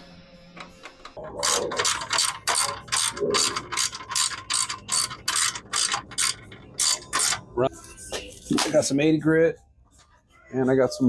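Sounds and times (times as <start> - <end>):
ratchet wrench clicking: 0.8 - 7.4.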